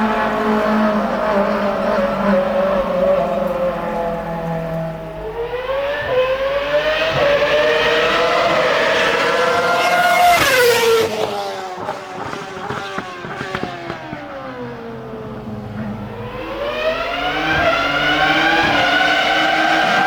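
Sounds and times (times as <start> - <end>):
racing car engine at high revs: 0.0 - 20.0.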